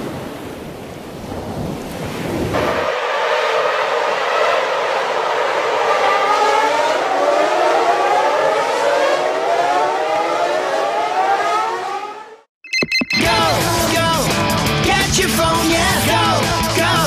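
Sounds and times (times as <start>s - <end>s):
wailing siren-like ringtone: 5.9s - 13.7s.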